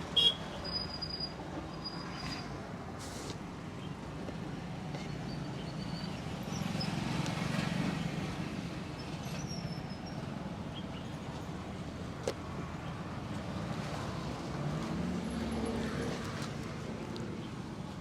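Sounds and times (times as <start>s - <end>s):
road traffic: 0.0s - 18.0s.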